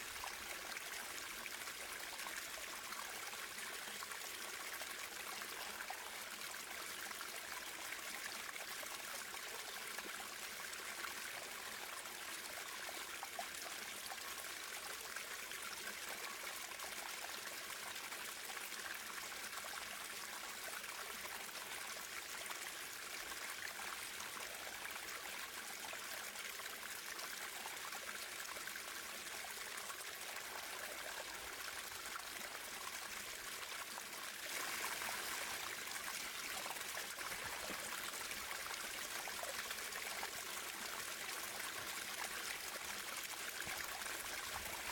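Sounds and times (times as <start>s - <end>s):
running water flowing: 33.8s - 42.4s.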